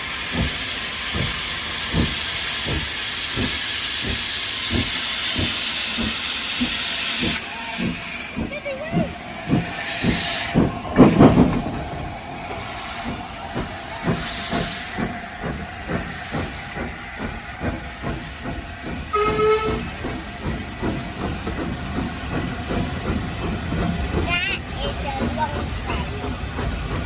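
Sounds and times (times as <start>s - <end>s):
train hissing: 0.0s - 27.0s
train wheels knocking: 0.0s - 27.0s
train whistle: 19.1s - 19.9s.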